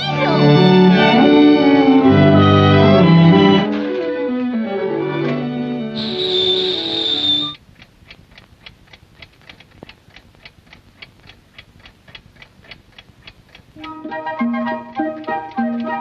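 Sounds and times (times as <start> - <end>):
orchestral music: 0.0 - 6.9, 13.9 - 16.0
clock ticking: 6.0 - 16.0.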